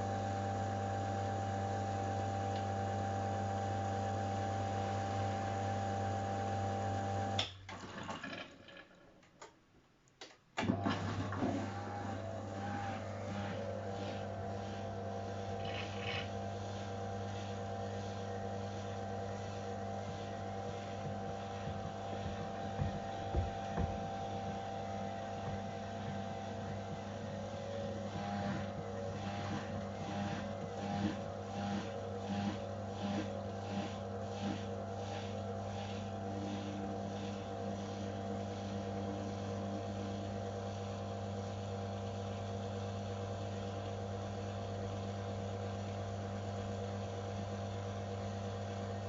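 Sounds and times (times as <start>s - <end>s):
washing machine motor humming: 0.0s - 7.8s, 10.6s - 49.0s.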